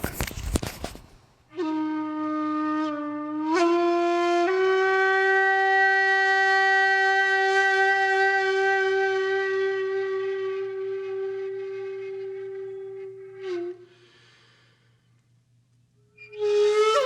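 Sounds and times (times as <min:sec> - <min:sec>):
horn-like wind instrument note: 0:16.4 - 0:17.0.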